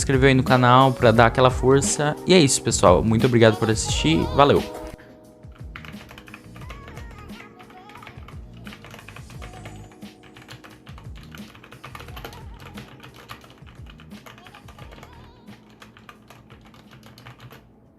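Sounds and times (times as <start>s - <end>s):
background music: 0.0s - 16.9s
mechanical keyboard typing: 5.5s - 17.7s.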